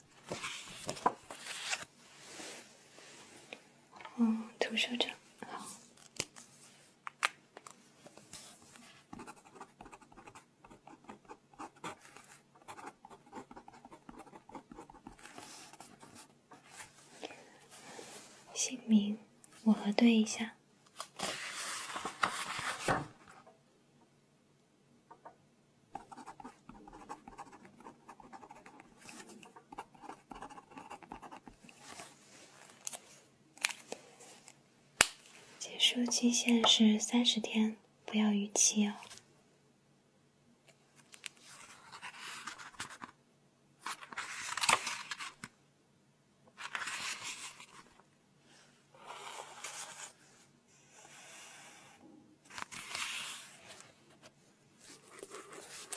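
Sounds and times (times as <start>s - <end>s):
pen scratching on paper: 9.1s - 16.8s, 26.0s - 31.6s.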